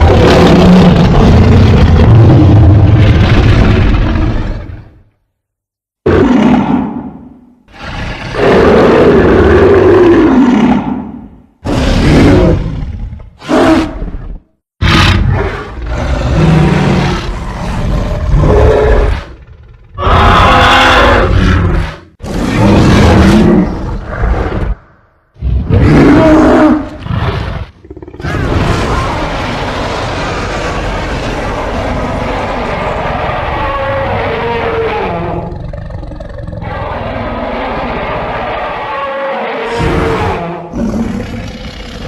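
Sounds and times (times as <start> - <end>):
creature roars and growls: 0.0 - 5.1, 6.0 - 42.0.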